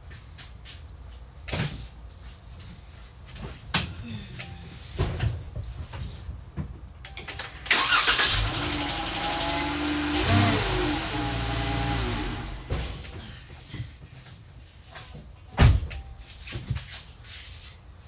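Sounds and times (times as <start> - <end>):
car engine cranking and starting: 7.6 - 13.2
car engine running: 7.7 - 13.2.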